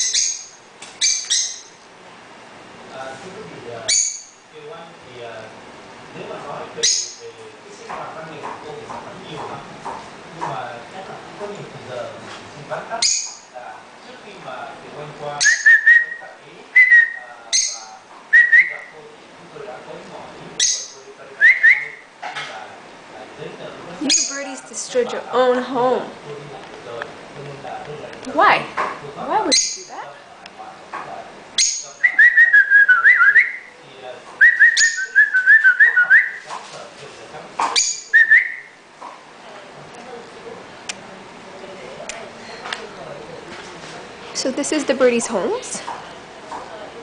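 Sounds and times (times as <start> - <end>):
bird screeching calls: 0.0 - 1.8
lovebirds chirping: 0.0 - 1.8, 3.9 - 4.5, 6.8 - 7.4, 13.0 - 13.6, 16.8 - 18.9, 20.6 - 22.1, 24.0 - 25.2, 29.4 - 30.1, 31.6 - 33.7, 34.4 - 36.4, 37.6 - 38.7.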